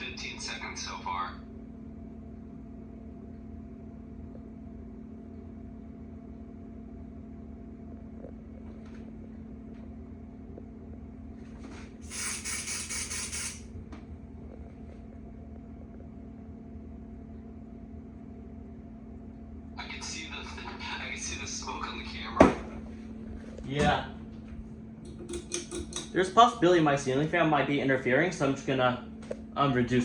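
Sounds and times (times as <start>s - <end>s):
ceiling fan humming: 0.0s - 30.0s
aerosol spray hiss: 12.0s - 13.6s
short puff: 12.0s - 13.6s.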